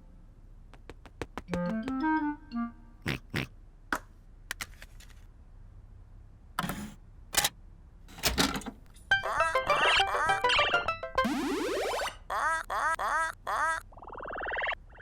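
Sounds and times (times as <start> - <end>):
sharp clicks and clunks: 6.6 - 9.1
bright electronic tune: 9.1 - 12.2.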